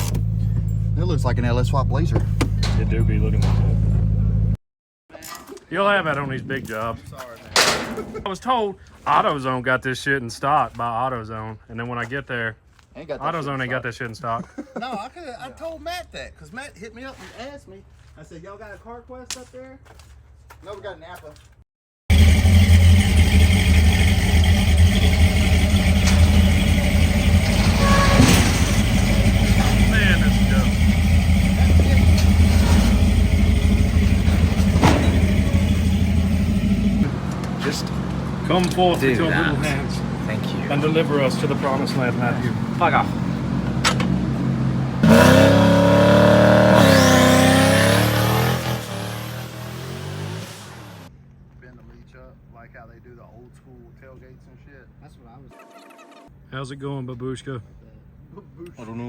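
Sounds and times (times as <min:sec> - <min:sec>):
car engine running: 0:00.0 - 0:04.6, 0:22.1 - 0:51.1.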